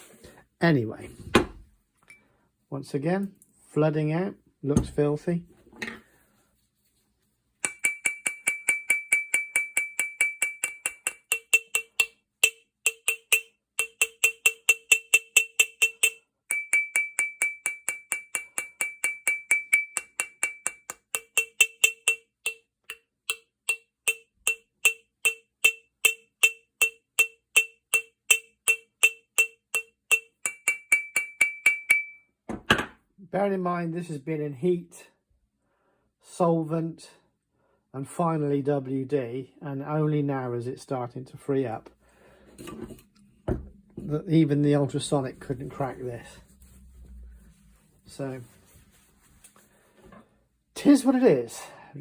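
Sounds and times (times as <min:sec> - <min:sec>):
hammer tapping on steel: 0:07.6 - 0:32.2.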